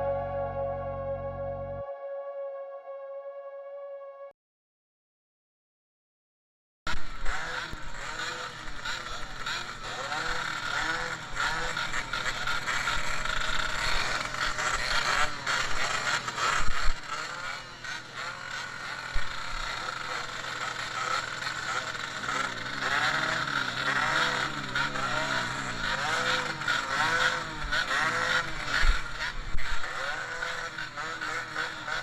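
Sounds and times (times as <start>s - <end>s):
motorcycle engines revving: 6.9s - 32.0s
single motorcycle engine: 6.9s - 32.0s.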